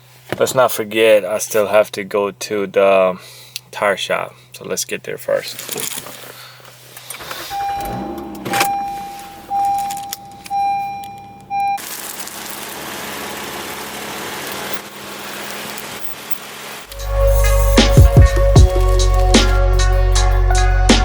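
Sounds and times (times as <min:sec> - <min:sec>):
car running noise: 0:07.1 - 0:20.4
car warning chime: 0:07.2 - 0:11.8
keys jangling: 0:07.8 - 0:13.6, 0:14.6 - 0:19.9.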